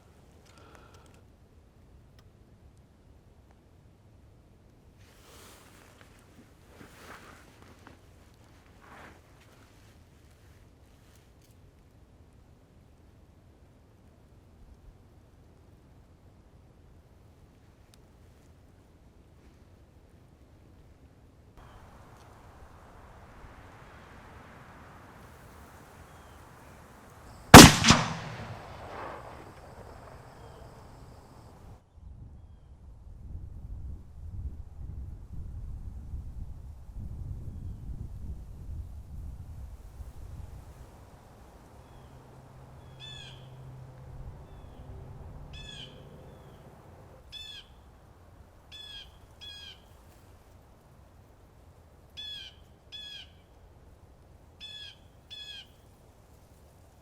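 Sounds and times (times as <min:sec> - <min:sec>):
sharp bangs with echo: 0:27.6 - 0:30.1.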